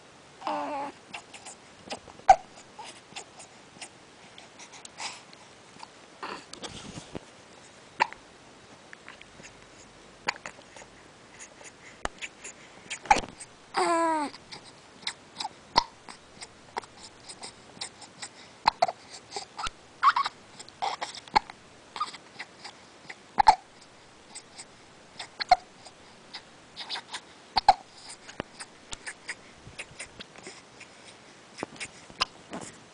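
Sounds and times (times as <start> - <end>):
baby cooing: 0.4 - 3.9, 6.2 - 6.5, 12.2 - 22.8, 24.3 - 30.6
baby hiccuping: 1.2 - 2.6, 8.0 - 8.2, 15.0 - 16.0, 19.6 - 22.2, 23.4 - 23.7, 25.2 - 25.7, 26.3 - 30.2.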